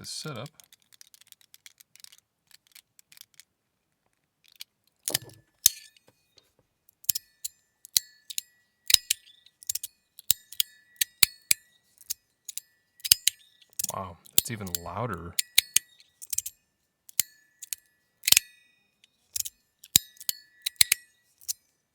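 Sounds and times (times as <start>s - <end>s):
faint handling ticks: 0.2s - 3.5s
metal fidget slider clacking: 0.5s - 3.5s, 4.4s - 6.1s, 7.0s - 18.6s, 19.3s - 21.6s.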